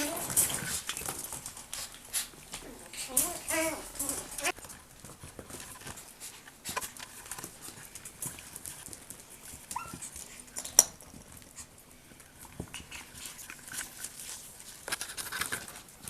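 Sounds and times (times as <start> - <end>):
puppy squeak: 9.8 - 10.0.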